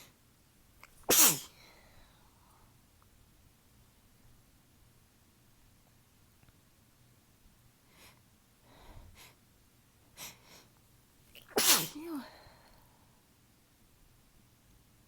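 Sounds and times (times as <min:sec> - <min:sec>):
person sneezing: 0:01.0 - 0:01.6, 0:11.4 - 0:12.4.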